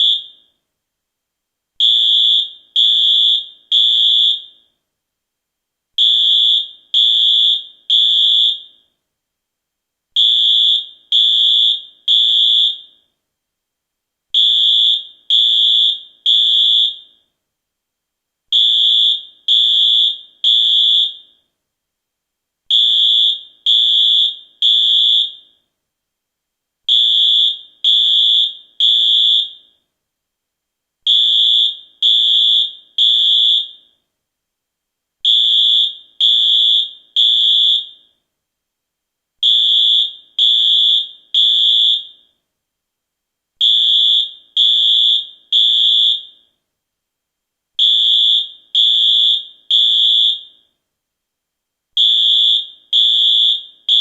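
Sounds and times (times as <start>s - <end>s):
fire alarm high-pitched beeps: 0.0s - 0.6s, 1.8s - 4.8s, 6.0s - 9.0s, 10.2s - 13.1s, 14.4s - 17.3s, 18.6s - 21.5s, 22.7s - 25.6s, 26.9s - 29.8s, 31.1s - 34.0s, 35.3s - 38.2s, 39.4s - 42.4s, 43.6s - 46.6s, 47.8s - 50.8s, 52.0s - 54.0s.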